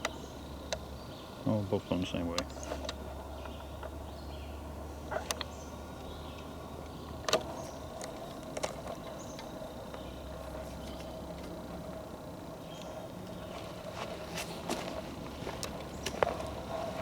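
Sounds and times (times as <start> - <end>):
footsteps on forest floor: 13.3 - 17.0.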